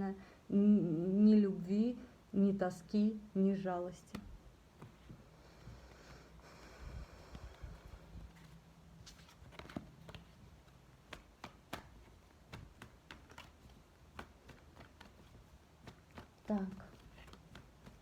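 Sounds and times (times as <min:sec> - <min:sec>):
cards tapping on a table: 0:09.4 - 0:18.0.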